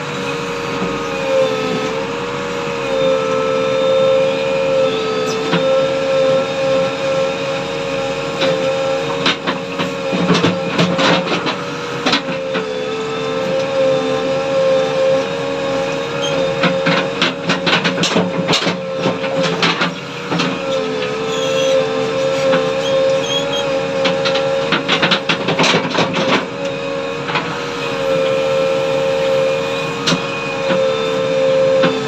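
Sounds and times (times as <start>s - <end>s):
backhoe loader engine humming: 0.0s - 32.0s
clanks and knocks of digging: 8.4s - 12.6s, 16.3s - 26.5s.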